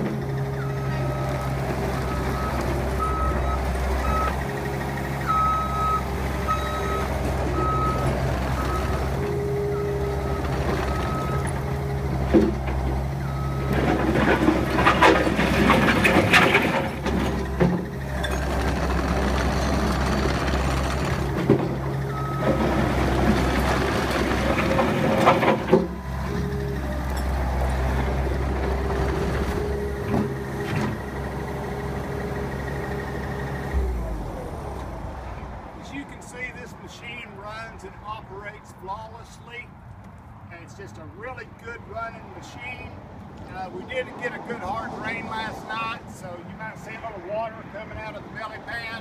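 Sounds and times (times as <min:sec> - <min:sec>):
diesel engine running: 0:00.0 - 0:39.1
backup alarm beeping: 0:05.3 - 0:11.5
clanking and rattling: 0:10.4 - 0:31.2.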